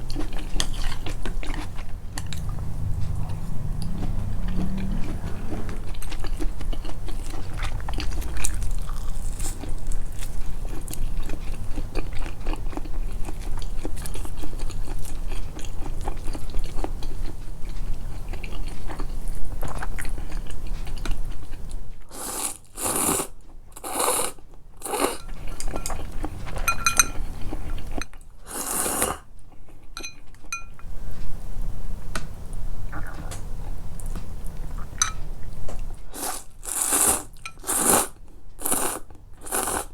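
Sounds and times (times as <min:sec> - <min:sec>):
chewing and crunching food: 0:00.0 - 0:31.4, 0:32.8 - 0:39.9.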